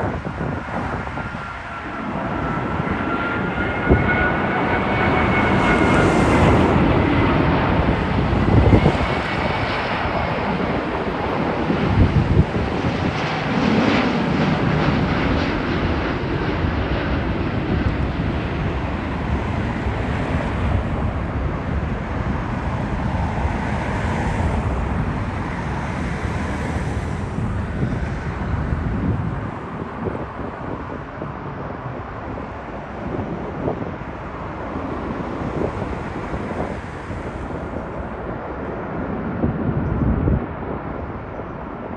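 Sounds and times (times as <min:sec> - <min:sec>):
jet engine rumble: 0:00.0 - 0:41.9.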